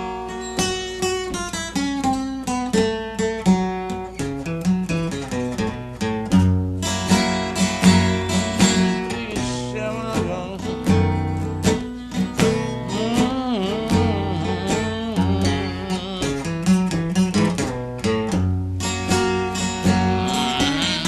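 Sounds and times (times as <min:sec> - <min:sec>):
acoustic blues guitar: 0:00.0 - 0:21.0.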